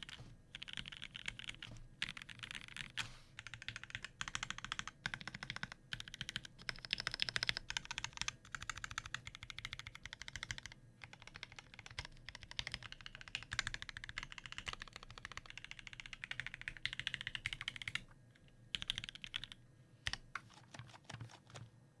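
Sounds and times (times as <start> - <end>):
mechanical keyboard typing: 0.0 - 18.0, 18.7 - 21.7.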